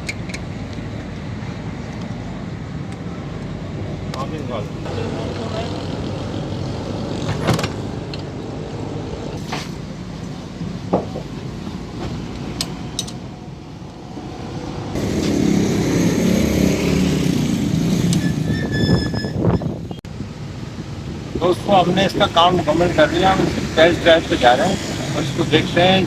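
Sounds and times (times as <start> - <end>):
car engine running: 14.1 - 18.2.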